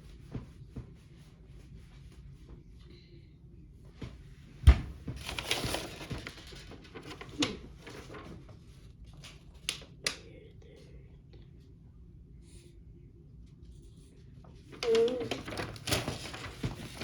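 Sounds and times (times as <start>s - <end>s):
rustling: 4.8s - 9.4s, 14.7s - 17.0s.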